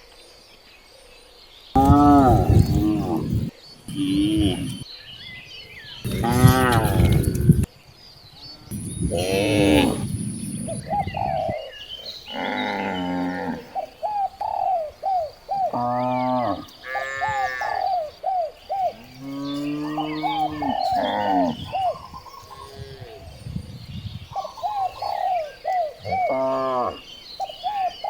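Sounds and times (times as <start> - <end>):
cattle mooing: 1.8 - 4.8, 6.0 - 7.7, 8.7 - 10.9
bird short calls: 1.8 - 4.9.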